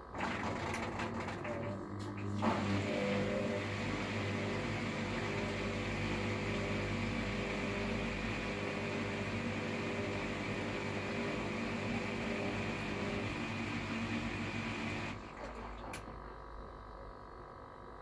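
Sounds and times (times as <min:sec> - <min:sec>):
washer-dryer motor and fan whirring: 0:00.0 - 0:18.0.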